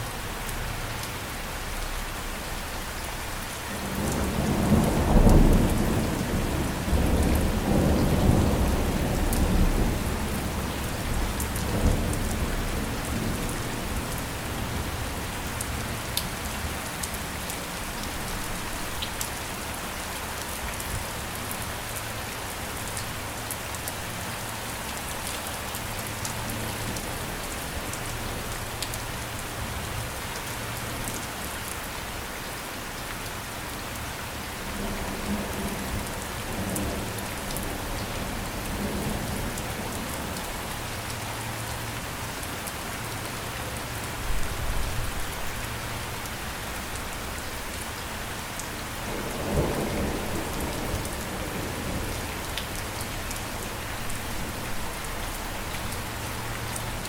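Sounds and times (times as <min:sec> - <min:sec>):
steady rain falling: 0:00.0 - 0:57.0
thunder rumble: 0:49.1 - 0:52.6.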